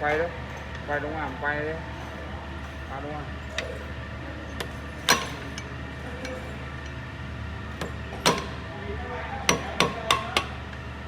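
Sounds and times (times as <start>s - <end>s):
steady low hum: 0.0s - 11.0s
tools knocking on metal: 4.6s - 7.0s, 7.8s - 8.6s, 9.5s - 10.6s.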